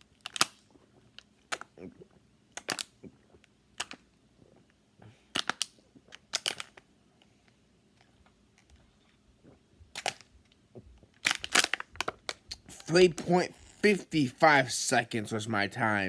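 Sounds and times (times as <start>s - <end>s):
plastic water bottle crinkling: 5.4s - 6.8s, 11.0s - 13.9s.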